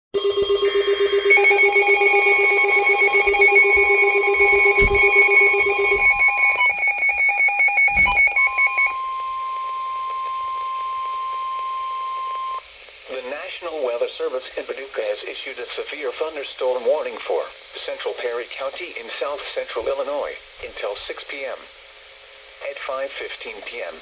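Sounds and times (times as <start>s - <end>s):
electronic alarms beeping: 0.2s - 12.6s
steady alarm tone: 0.2s - 12.7s
knocks: 3.1s - 6.6s, 7.9s - 8.4s.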